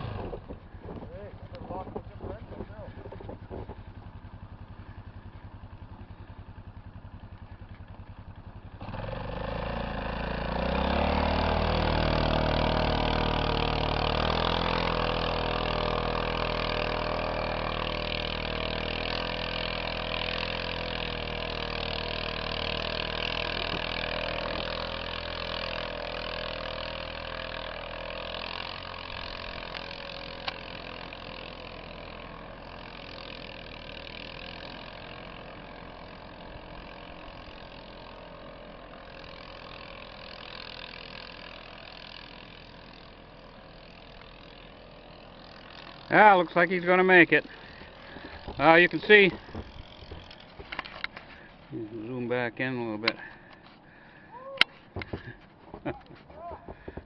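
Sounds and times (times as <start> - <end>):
vehicle engine revving: 0.0 - 54.3.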